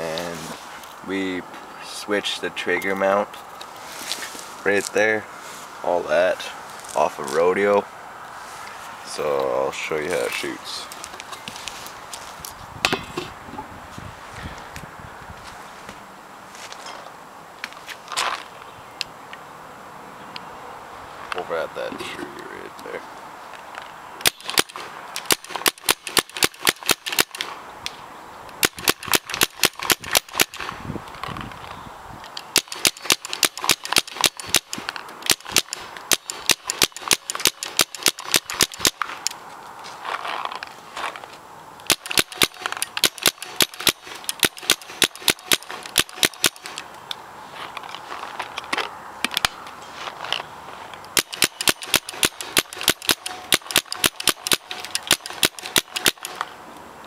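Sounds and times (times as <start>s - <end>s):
paintball gun firing rapid shots: 24.2s - 27.5s, 28.6s - 30.8s, 32.5s - 39.0s, 41.9s - 46.8s, 51.2s - 56.4s.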